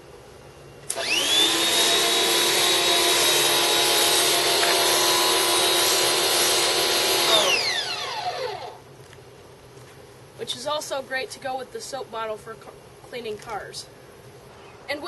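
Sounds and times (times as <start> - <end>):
pressure washer motor whining: 0.9 - 8.8.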